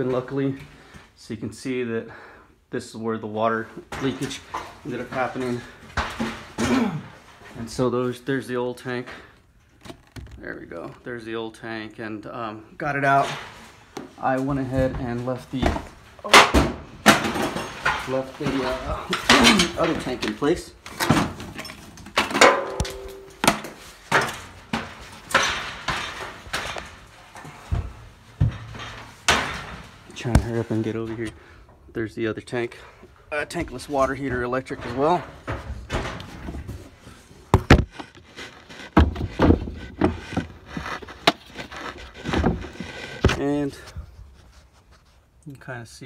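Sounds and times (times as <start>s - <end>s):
thuds and scrapes: 3.8s - 7.8s, 13.0s - 31.6s, 33.5s - 45.3s.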